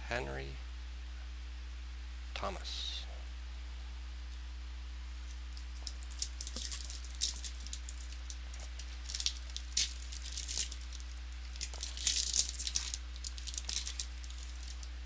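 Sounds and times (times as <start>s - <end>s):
papery rustling and crinkling: 5.1s - 15.0s.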